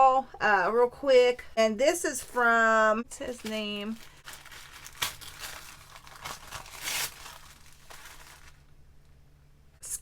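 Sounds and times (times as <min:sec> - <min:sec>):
packaging crinkling: 0:03.2 - 0:08.7.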